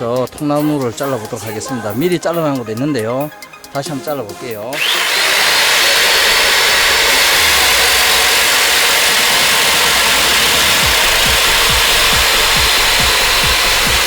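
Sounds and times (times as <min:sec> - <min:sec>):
electric chainsaw whining: 0:04.7 - 0:14.0.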